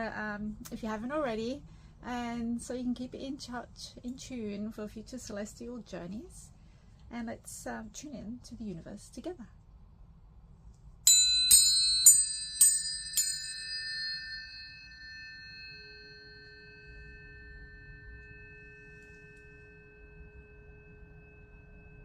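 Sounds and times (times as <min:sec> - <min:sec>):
low steady tone: 0:09.6 - 0:22.0
tuning forks ringing: 0:11.0 - 0:22.0.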